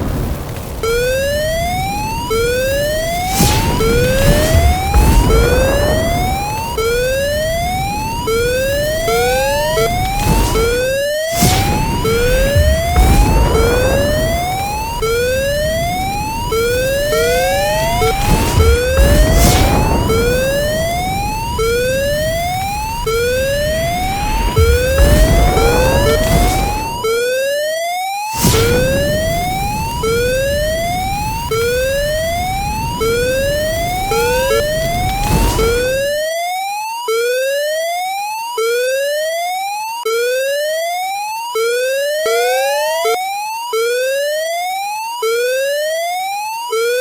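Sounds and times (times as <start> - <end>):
crackling fire: 0.0 - 27.0, 28.4 - 36.2
rising alarm siren: 0.6 - 47.0.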